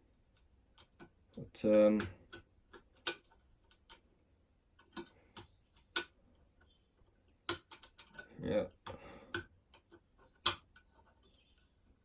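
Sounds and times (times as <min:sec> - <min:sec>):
lock pick clicking in lock: 0:07.3 - 0:10.8.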